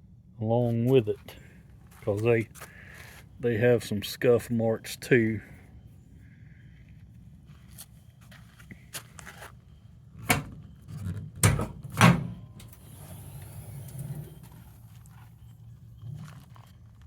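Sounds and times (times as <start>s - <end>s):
toolbox lid clunking: 11.3s - 12.7s.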